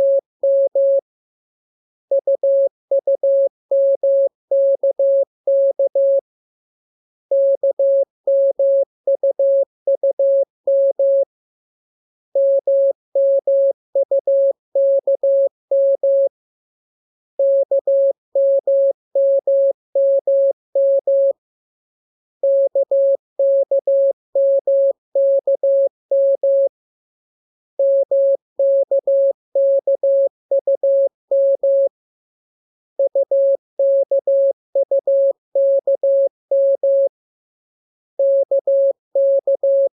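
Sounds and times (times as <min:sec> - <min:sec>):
morse code tone: 0:27.8 - 0:31.9, 0:33.0 - 0:37.1, 0:38.2 - 0:39.9.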